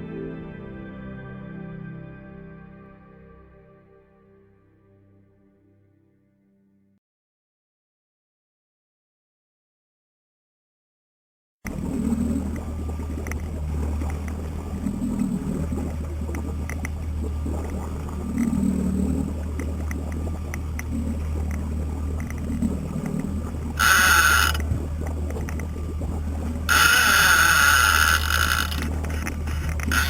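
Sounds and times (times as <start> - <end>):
boat engine droning: 11.7 - 30.0
water noise: 11.7 - 30.0
fishing reel drag: 23.8 - 24.6, 26.7 - 30.0.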